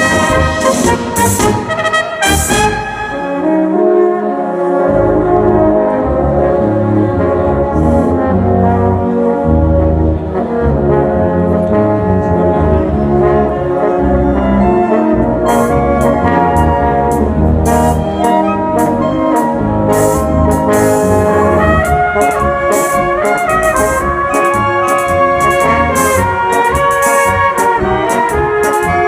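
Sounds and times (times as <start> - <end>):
sharp rhythmic strikes: 0.0 - 3.6, 14.8 - 29.0
brass band playing a polka: 0.0 - 29.0.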